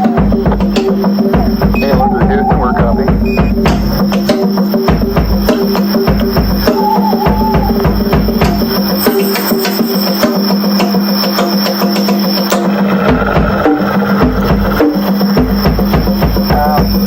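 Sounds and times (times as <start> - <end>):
drums and cymbals: 0.0 - 17.0
heavy bass drum hits: 0.2 - 8.9, 13.0 - 17.0.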